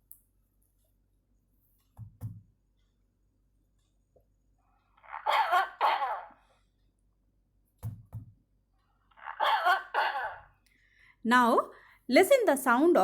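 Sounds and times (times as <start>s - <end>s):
person coughing: 5.3s - 6.4s, 9.4s - 10.5s.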